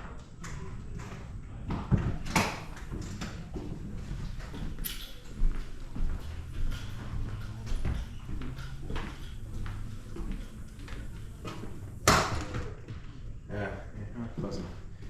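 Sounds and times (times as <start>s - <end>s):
footsteps on wooden floor: 2.0s - 12.0s.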